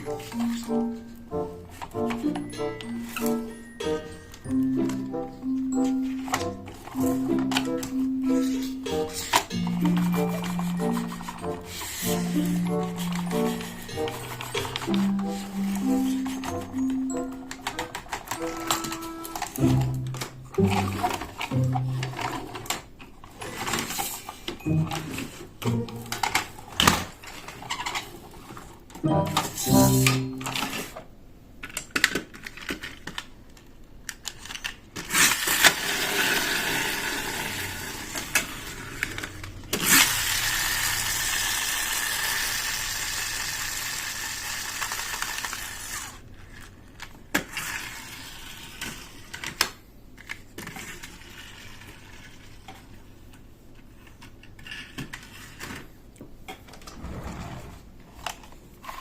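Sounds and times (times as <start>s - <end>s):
plastic toy pieces clicking: 5.8s - 28.6s, 31.6s - 36.5s, 38.1s - 52.8s.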